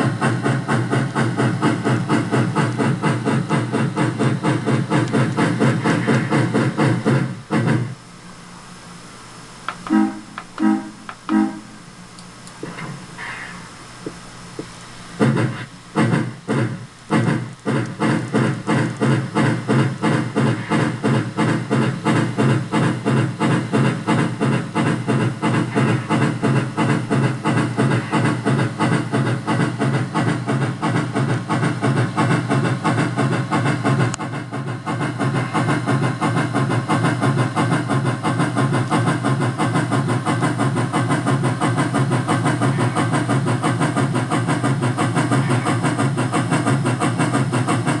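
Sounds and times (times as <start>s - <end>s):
steam locomotive chuffs from speaker: 0.0s - 8.2s, 9.7s - 12.0s, 15.0s - 48.0s.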